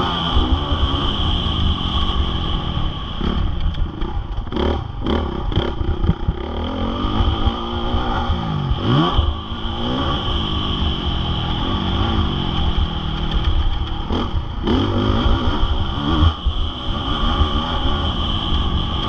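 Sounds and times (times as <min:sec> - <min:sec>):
motocross bike engine revving: 0:00.0 - 0:19.0
knocks and clatter: 0:12.5 - 0:14.5.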